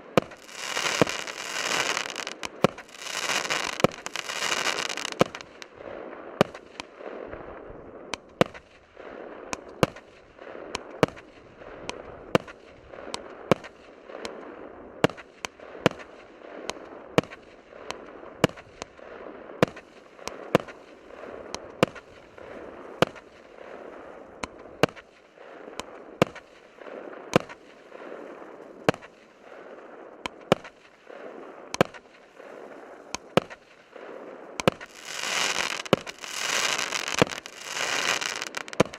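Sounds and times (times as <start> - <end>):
firework bangs: 0.0 - 7.2, 30.2 - 38.9
firework hiss: 0.2 - 5.7, 34.6 - 38.9.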